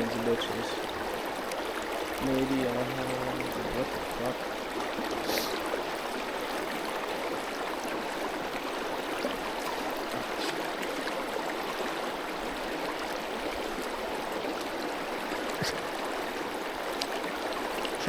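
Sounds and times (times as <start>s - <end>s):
creek water flowing over rocks: 0.0s - 18.0s.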